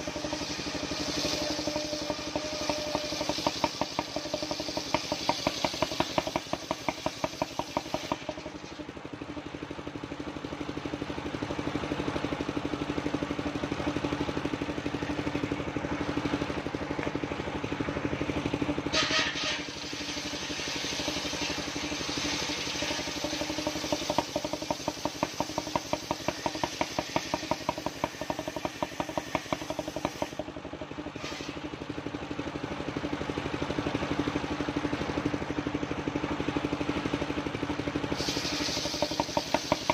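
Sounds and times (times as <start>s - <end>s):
sawmill engine running: 0.0s - 39.9s
brief scraping burst: 18.8s - 23.4s, 31.2s - 31.6s.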